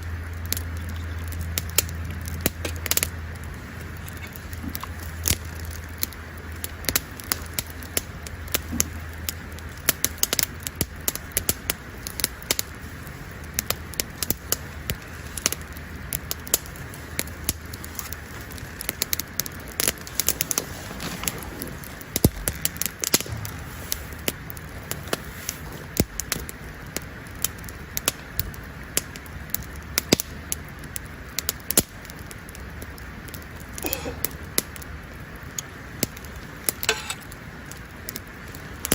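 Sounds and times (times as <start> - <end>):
wood campfire crackling: 0.0 - 38.9.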